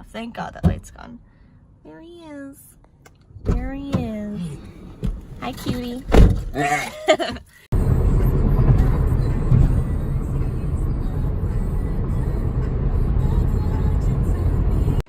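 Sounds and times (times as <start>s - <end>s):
car rumbling along road: 3.1s - 15.0s.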